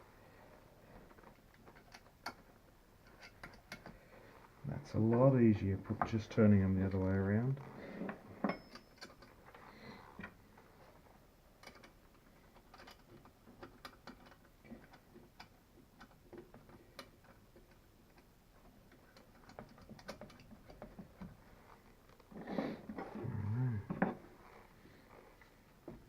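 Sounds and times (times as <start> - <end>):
small metallic clicks and taps: 1.1 - 4.0, 8.4 - 9.4, 11.6 - 21.5.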